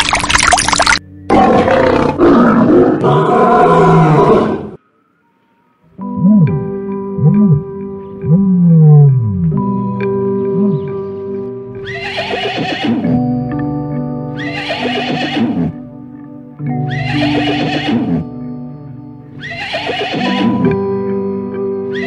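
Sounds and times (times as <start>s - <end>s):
background music with held notes: 4.8s - 22.0s
horse whinnying: 11.8s - 13.2s, 14.4s - 15.8s, 16.8s - 18.3s, 19.4s - 20.8s.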